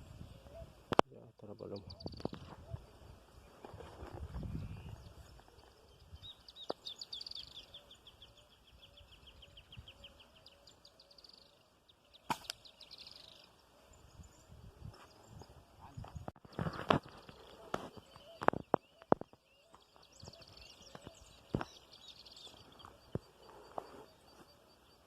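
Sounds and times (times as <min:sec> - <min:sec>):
bird trilling chirps: 0:06.0 - 0:14.4
sharp click: 0:12.3 - 0:12.6.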